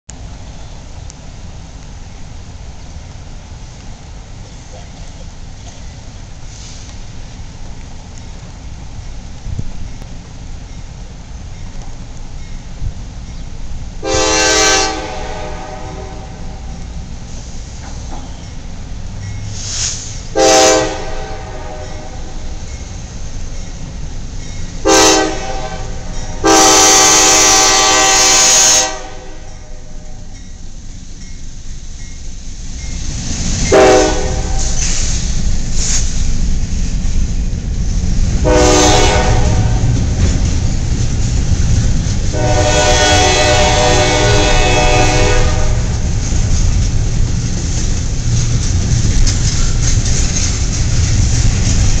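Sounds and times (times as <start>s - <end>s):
train rumbling on rails: 0.1s - 52.0s
locomotive air horn blasts: 14.0s - 16.7s, 20.3s - 22.6s, 24.8s - 30.3s, 33.7s - 34.8s, 38.4s - 40.0s, 42.3s - 46.1s.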